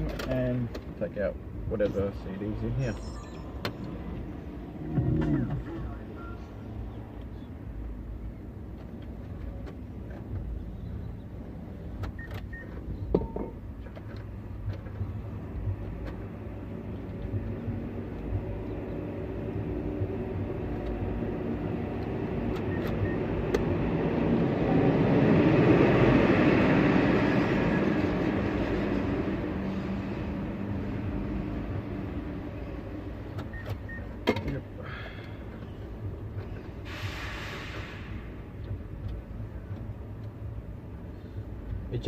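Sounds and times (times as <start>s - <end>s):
low vehicle rumble: 0.0s - 42.0s
vehicle passing: 3.5s - 6.9s.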